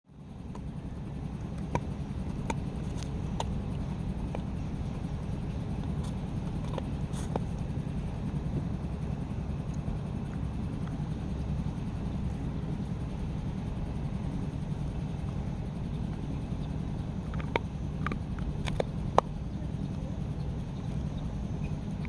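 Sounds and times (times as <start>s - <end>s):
steady low rumble: 0.1s - 22.0s
bone being chewed cracking: 1.4s - 7.8s, 15.2s - 20.0s.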